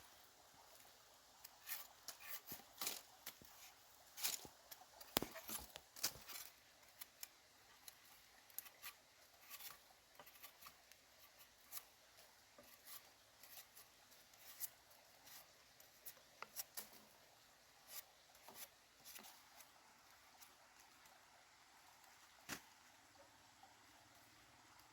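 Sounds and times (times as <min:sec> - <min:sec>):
light clicks and snips: 0:00.8 - 0:17.0.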